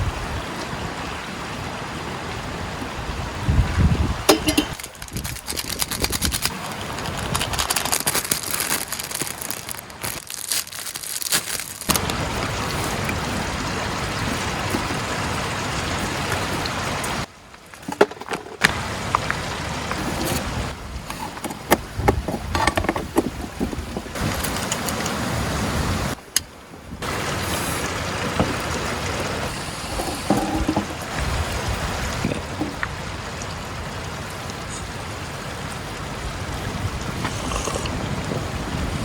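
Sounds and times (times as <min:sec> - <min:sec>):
river rushing: 0:00.0 - 0:04.8, 0:11.9 - 0:17.4, 0:24.1 - 0:39.0.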